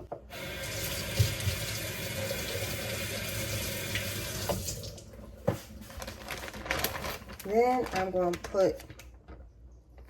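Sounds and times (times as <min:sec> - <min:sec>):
faucet running: 0:00.3 - 0:05.1.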